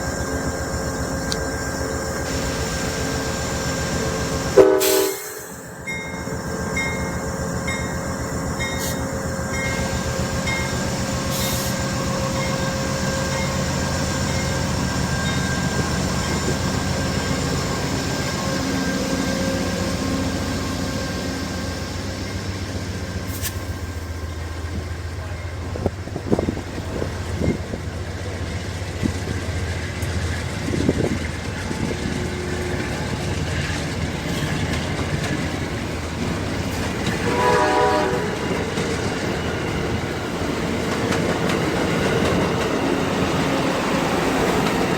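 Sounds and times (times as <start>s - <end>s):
steel wheels clicking and squealing: 0.0s - 24.1s, 27.2s - 37.6s
diesel locomotive rumble: 0.0s - 44.9s.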